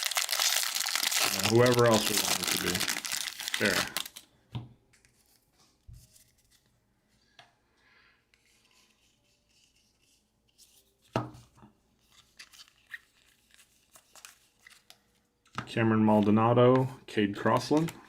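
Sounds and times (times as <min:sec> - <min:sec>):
trading cards rustling and sliding: 0:00.0 - 0:04.2, 0:08.4 - 0:15.3, 0:17.4 - 0:18.0.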